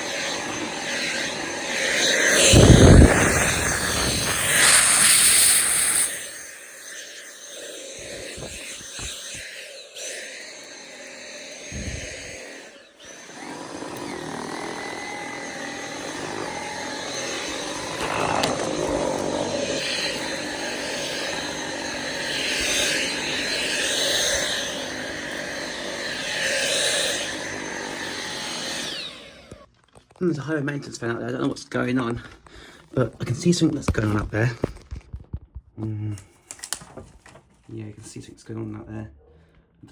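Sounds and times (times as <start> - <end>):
vacuum cleaner whine: 0.0 - 29.7.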